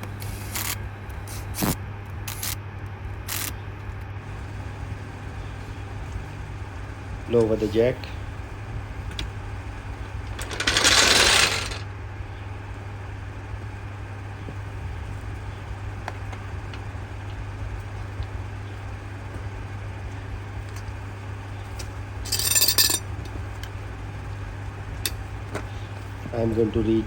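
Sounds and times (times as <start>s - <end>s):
steady low hum: 0.0s - 27.0s
metal tools clinking: 10.3s - 11.8s, 22.3s - 23.0s.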